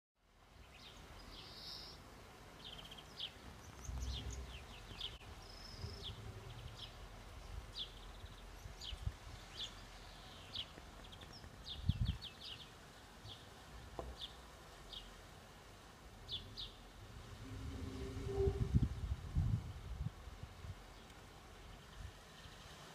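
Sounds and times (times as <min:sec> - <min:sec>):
small birds chirping: 0:00.6 - 0:18.6
low outdoor rumble: 0:02.6 - 0:12.1, 0:12.9 - 0:22.1.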